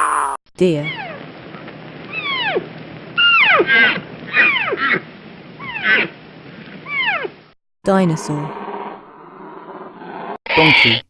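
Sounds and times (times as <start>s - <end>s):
deer calling: 2.1s - 6.2s, 6.9s - 7.4s.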